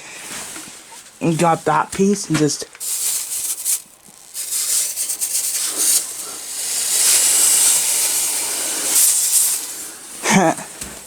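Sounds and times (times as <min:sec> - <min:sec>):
snow sizzling on hot exhaust: 0:02.5 - 0:11.0.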